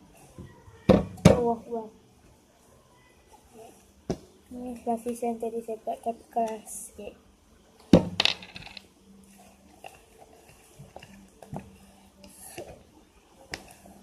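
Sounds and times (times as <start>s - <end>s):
small hard objects clattering: 8.1s - 8.8s.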